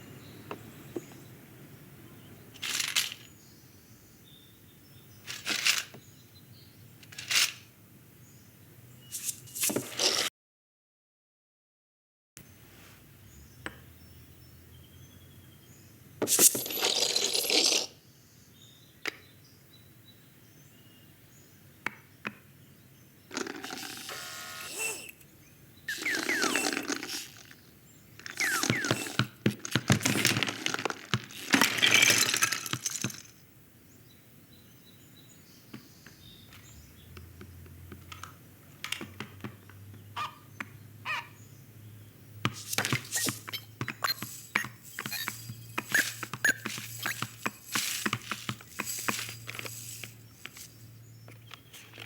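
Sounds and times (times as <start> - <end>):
scraping and rustling: 9.1 - 10.3, 42.5 - 52.0
squeaky rising streaks: 23.8 - 25.2, 25.9 - 27.5, 28.3 - 29.3, 42.6 - 50.8.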